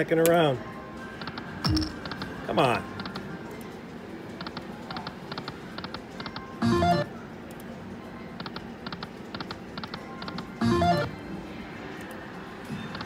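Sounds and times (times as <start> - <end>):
slot machine electronic ticks: 4.4 - 7.1, 8.4 - 11.1
slot machine jingle: 6.6 - 7.1, 10.2 - 11.2.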